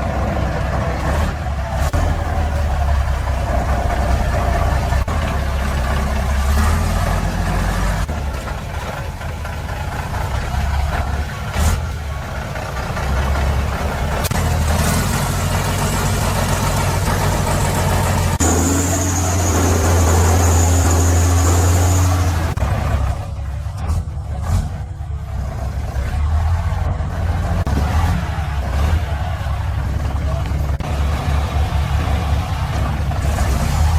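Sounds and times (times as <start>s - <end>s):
truck engine droning: 0.0s - 33.9s.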